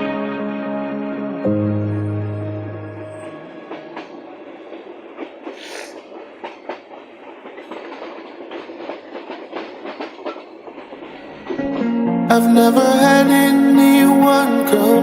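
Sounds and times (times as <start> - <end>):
train rumbling along track: 0.0 - 15.0
wheels clicking over rails: 2.6 - 15.0
brief hiss: 5.5 - 6.1.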